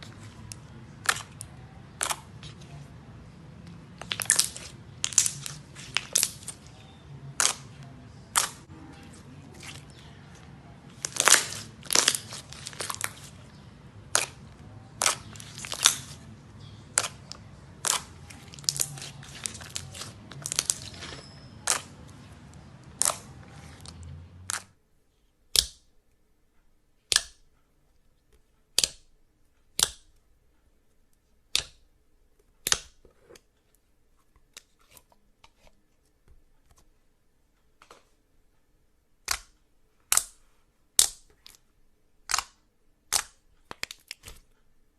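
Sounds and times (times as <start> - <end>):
low steady hum: 0.0 - 25.1
slime clicking pops: 42.3 - 44.4.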